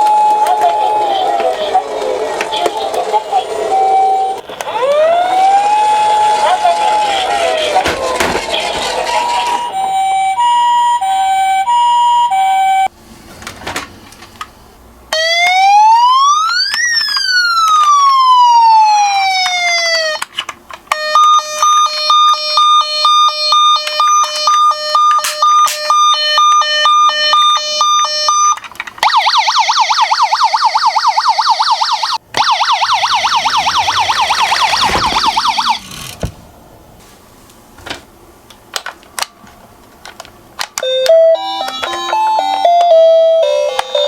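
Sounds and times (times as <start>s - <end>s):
two-tone siren: 0.0s - 1.8s, 3.2s - 7.7s, 8.8s - 12.9s, 15.1s - 20.2s, 20.9s - 35.8s
warbling siren yelp: 0.0s - 7.8s, 8.8s - 12.6s, 15.2s - 20.2s, 21.0s - 35.8s.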